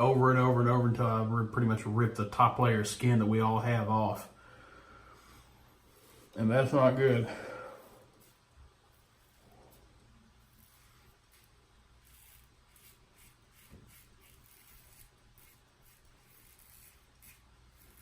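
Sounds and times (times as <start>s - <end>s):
razor scraping stubble: 5.7s - 18.0s.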